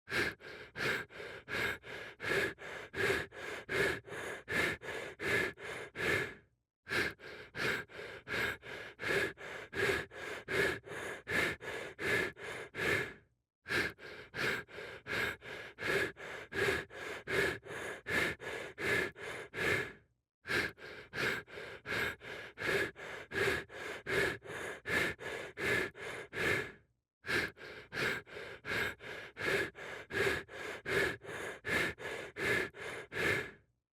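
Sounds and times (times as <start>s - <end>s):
rapid panting breaths: 0.0s - 33.7s.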